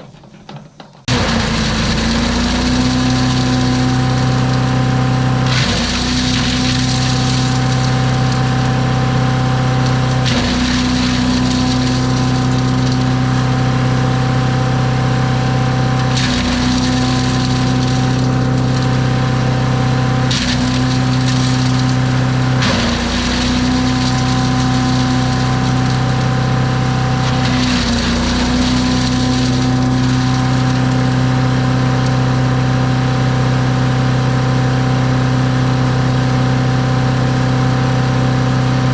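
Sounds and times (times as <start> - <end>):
crunching wood: 0.0 - 13.9, 15.9 - 32.3
wood chipper engine humming: 0.0 - 38.9.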